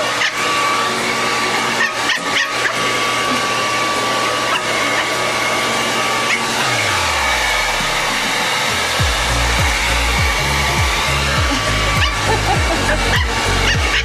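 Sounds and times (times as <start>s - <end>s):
puppy barking: 0.0s - 0.4s, 1.8s - 2.8s, 4.4s - 5.1s
blow dryer whirring: 0.0s - 14.0s.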